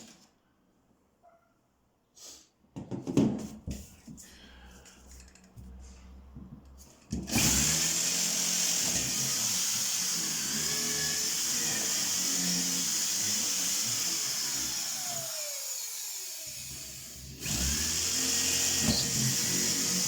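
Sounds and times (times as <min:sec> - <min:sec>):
power tool whining: 0:07.3 - 0:20.0.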